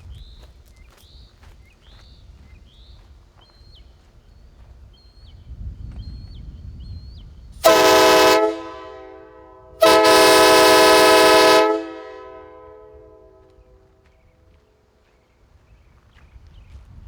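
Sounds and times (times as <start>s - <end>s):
train horn blasts: 7.6s - 14.0s.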